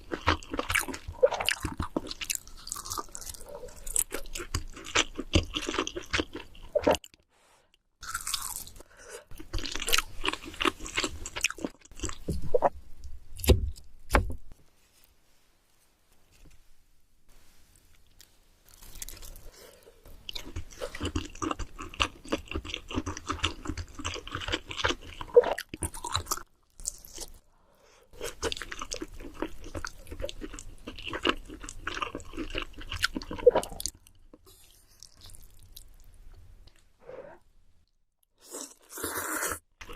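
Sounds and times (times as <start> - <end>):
chewing noodles: 0.0 - 7.2, 20.2 - 27.4, 28.2 - 36.8.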